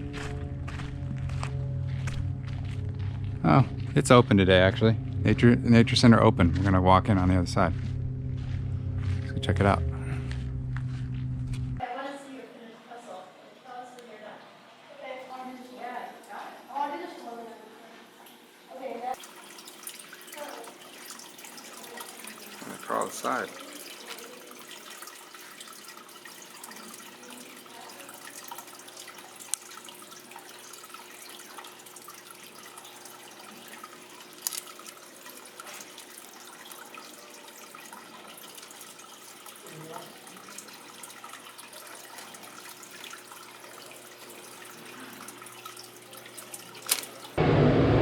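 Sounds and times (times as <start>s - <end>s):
low steady hum: 0.0s - 11.8s
faint trickling water: 11.8s - 47.4s.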